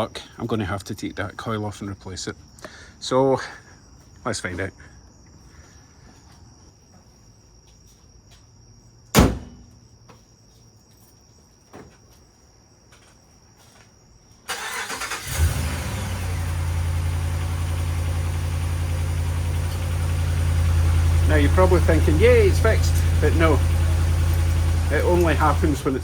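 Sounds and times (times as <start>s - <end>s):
loud knock: 9.2s - 9.7s
engine cranking and idling: 14.5s - 26.0s.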